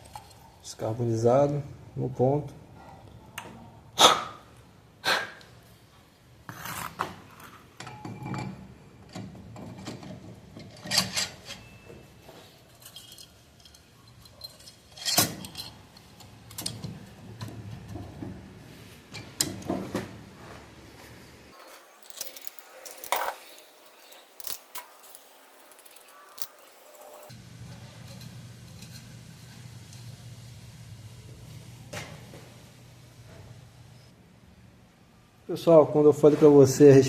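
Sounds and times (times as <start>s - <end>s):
metal parts clinking: 10.6s - 11.8s, 12.7s - 16.8s, 21.5s - 27.3s.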